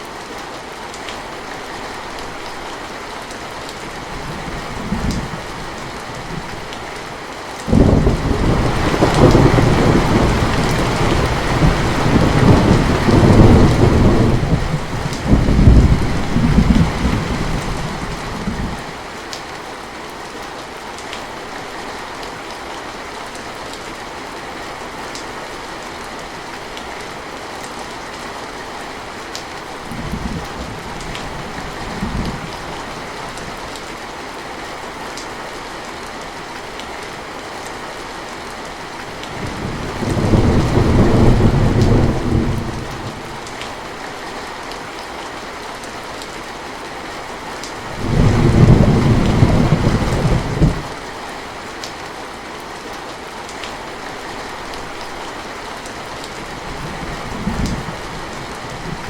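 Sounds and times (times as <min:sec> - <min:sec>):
steady rain: 0:00.0 - 0:59.0
thunder rumbling: 0:07.7 - 0:18.8, 0:39.4 - 0:43.5, 0:47.9 - 0:51.0.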